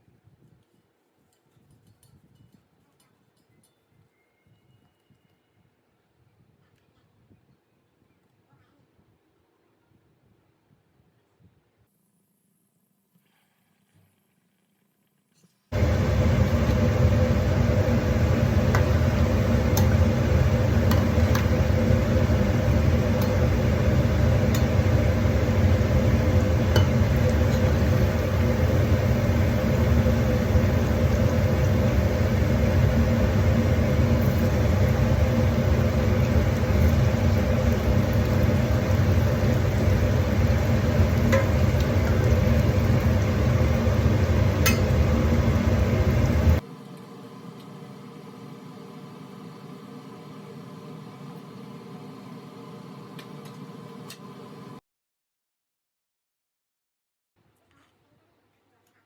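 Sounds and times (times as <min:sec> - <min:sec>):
low machine hum: 0:15.7 - 0:54.8.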